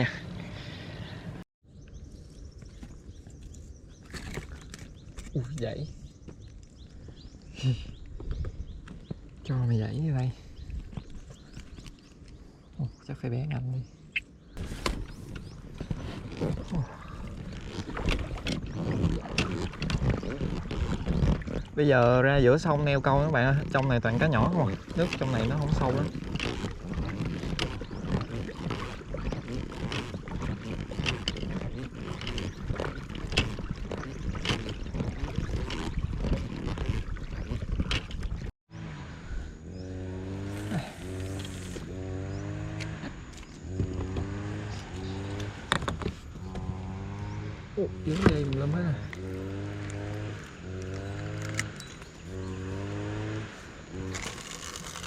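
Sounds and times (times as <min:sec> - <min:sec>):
water moving around a hull: 0:00.0 - 0:12.8, 0:14.4 - 0:38.6, 0:40.4 - 0:42.0, 0:43.3 - 0:55.0
wind rumble on microphone: 0:00.0 - 0:13.0, 0:13.9 - 0:55.0
knocks and clatter on a boat: 0:08.0 - 0:09.3, 0:14.6 - 0:38.5, 0:45.7 - 0:46.8.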